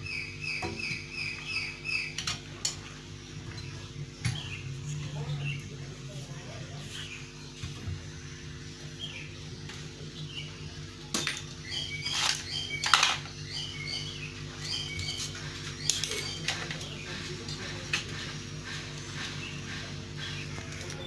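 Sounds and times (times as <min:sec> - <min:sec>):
small birds chirping: 0:00.0 - 0:21.0
steady low hum: 0:00.0 - 0:21.0.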